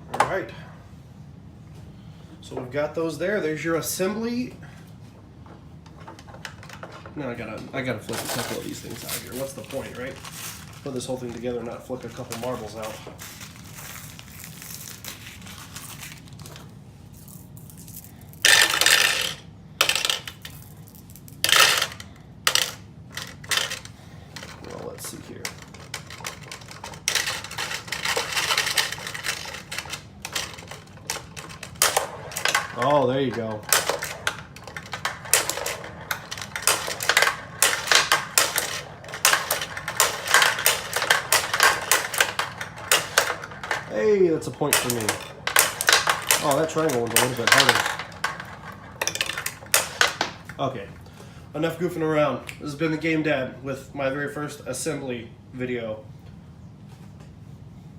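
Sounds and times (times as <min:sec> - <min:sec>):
metal balls clattering on plastic: 0:05.8 - 0:51.0
marbles rattling on plastic board: 0:05.9 - 0:07.0, 0:08.1 - 0:50.7.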